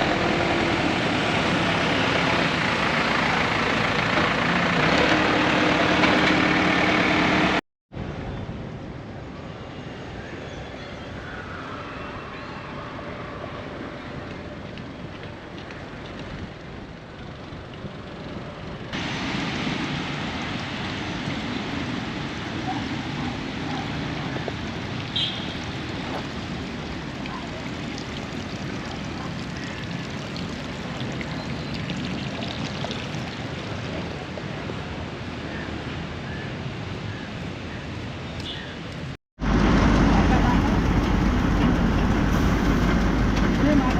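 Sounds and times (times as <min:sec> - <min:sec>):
flowing water rushing: 0:19.0 - 0:35.5.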